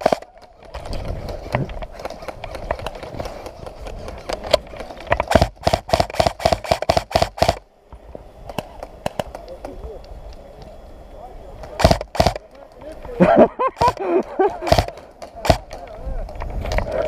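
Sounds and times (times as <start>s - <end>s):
airsoft gun shots: 0.0s - 0.3s, 5.2s - 7.6s, 11.8s - 12.4s, 13.8s - 15.8s.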